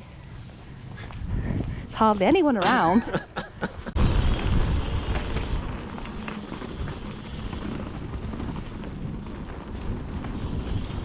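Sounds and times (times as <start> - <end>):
wind buffeting microphone: 1.0 - 2.5, 3.1 - 11.0
bike tyres rumbling on trail: 4.0 - 11.0.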